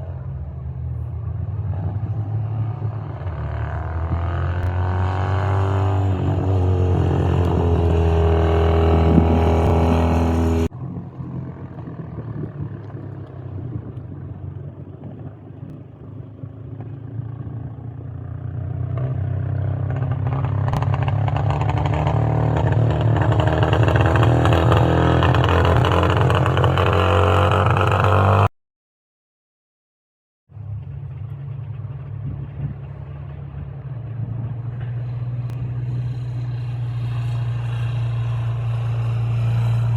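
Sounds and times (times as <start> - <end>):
racing car engines revving: 0.0 - 14.2, 18.9 - 28.5.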